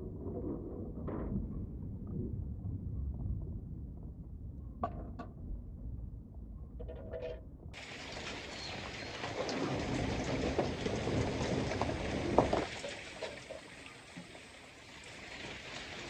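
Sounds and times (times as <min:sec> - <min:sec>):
rain falling: 0:07.8 - 0:16.0.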